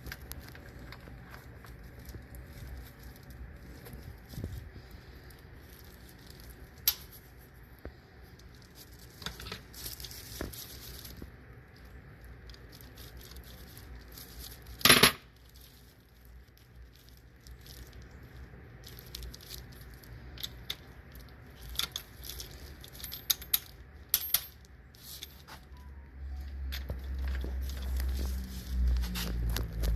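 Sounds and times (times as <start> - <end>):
metal tools clinking: 21.6 - 25.8.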